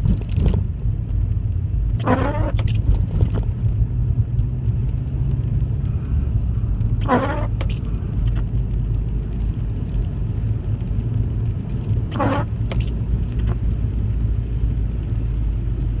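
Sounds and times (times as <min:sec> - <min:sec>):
engine and road noise: 0:00.0 - 0:16.0
short squeak: 0:02.0 - 0:03.4, 0:07.0 - 0:08.4, 0:12.1 - 0:13.6.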